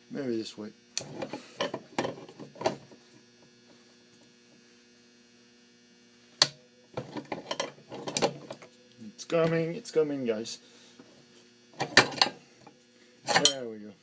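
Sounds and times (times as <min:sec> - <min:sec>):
faint electrical hum: 0:00.0 - 0:14.0.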